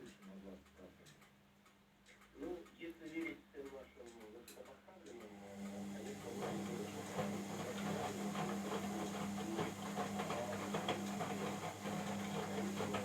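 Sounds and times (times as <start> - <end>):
washing machine motor hum: 5.3 - 13.0.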